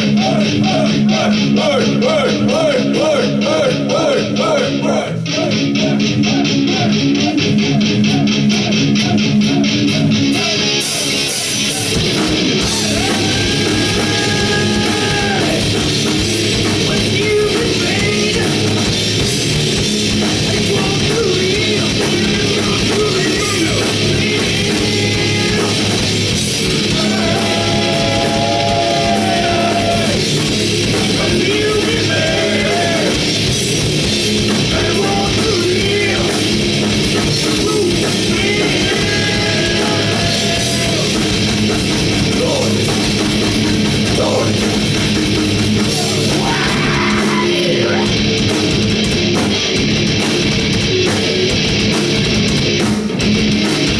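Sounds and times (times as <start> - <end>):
person singing: 0.0 - 12.0, 31.0 - 33.3, 34.7 - 36.5, 37.3 - 41.4, 45.8 - 48.2
heavy metal band playing: 0.0 - 53.9.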